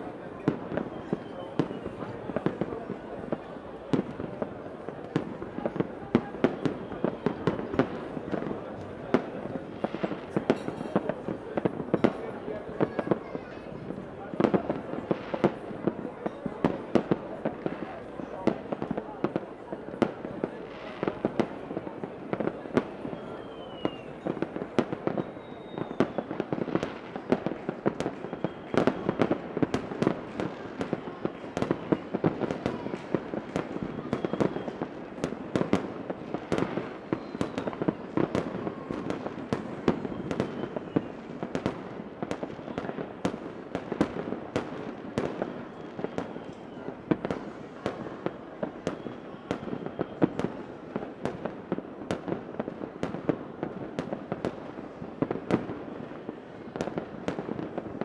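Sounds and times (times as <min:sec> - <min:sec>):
fireworks bangs and crackling: 0:00.0 - 0:58.0
faint short whistles: 0:00.9 - 0:02.1, 0:23.0 - 0:24.4, 0:25.1 - 0:26.4, 0:28.2 - 0:29.3, 0:33.8 - 0:34.8, 0:37.1 - 0:37.8, 0:40.0 - 0:41.2, 0:45.5 - 0:46.9, 0:48.3 - 0:50.4.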